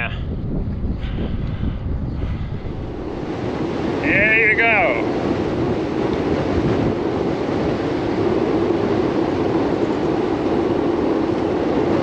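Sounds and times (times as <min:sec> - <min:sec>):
constant low hum: 0:00.0 - 0:12.0
road and wind noise: 0:00.0 - 0:12.0.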